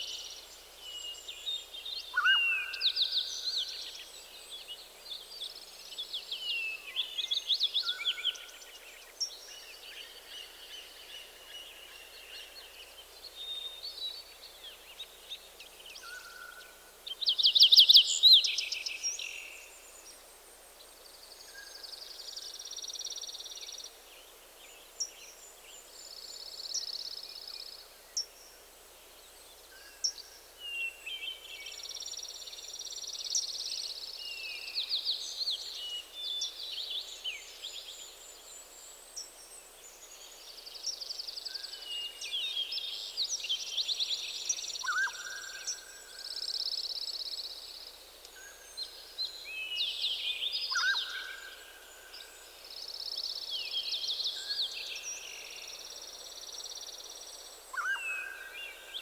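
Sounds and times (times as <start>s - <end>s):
faint steady hiss: 0.0s - 59.0s
songbirds singing: 29.0s - 59.0s.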